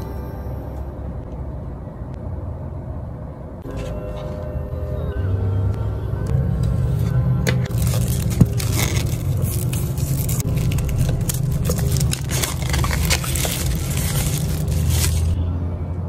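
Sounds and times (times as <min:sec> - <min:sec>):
steady low hum: 0:00.0 - 0:16.0
plastic packaging crinkling: 0:07.6 - 0:15.4.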